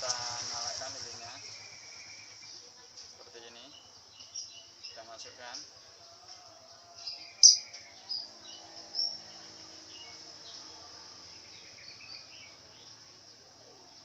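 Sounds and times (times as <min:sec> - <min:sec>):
faint high hiss: 0:00.0 - 0:05.8
small birds chirping: 0:00.0 - 0:14.0.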